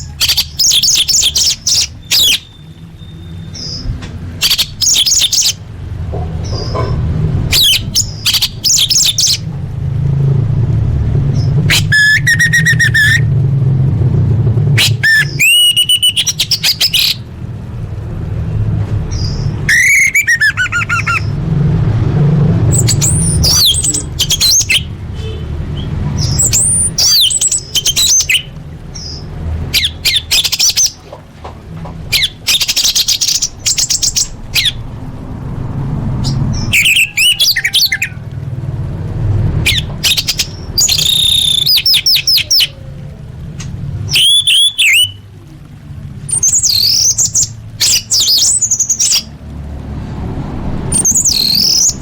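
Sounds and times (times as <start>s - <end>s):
low steady rumble: 0.0s - 52.0s
thrush singing: 32.1s - 38.3s.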